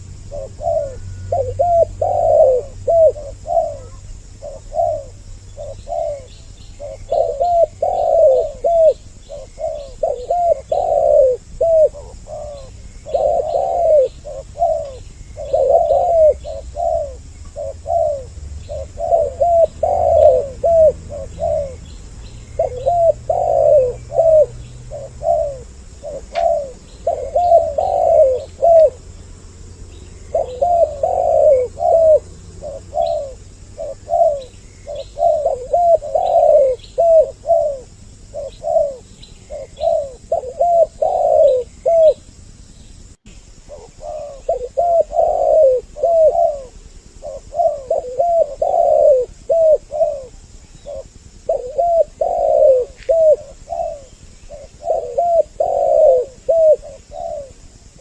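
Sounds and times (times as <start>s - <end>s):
faint high bird chirps: 0.0s - 29.0s
doves cooing: 0.0s - 42.4s, 43.5s - 58.0s.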